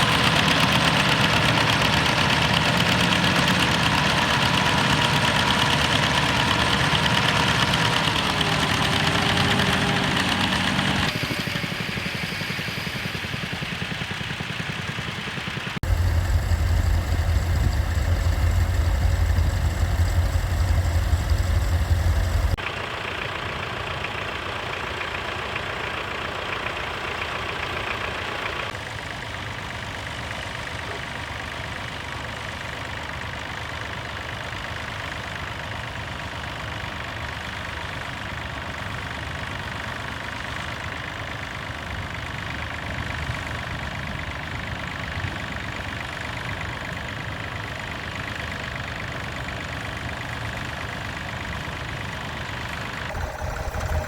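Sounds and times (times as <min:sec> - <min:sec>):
deep tractor engine running: 0:00.0 - 0:22.6, 0:48.5 - 0:54.0
higher-toned tractor engine: 0:00.0 - 0:31.0, 0:31.6 - 0:54.0.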